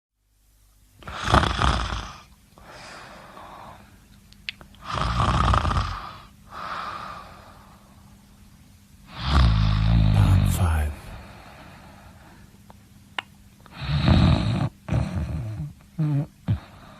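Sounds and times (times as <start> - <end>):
breathing: 2.6 - 4.0, 6.0 - 8.1, 11.1 - 12.6, 16.6 - 16.9
person snoring: 9.1 - 11.5.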